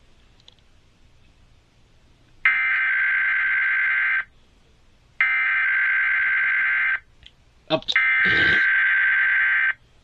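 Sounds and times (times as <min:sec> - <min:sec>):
shrill buzzing data tone: 0:02.5 - 0:04.3, 0:08.0 - 0:09.8.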